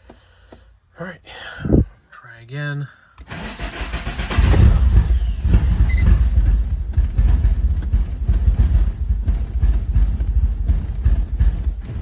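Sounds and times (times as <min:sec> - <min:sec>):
car engine cranking: 0:03.2 - 0:12.0.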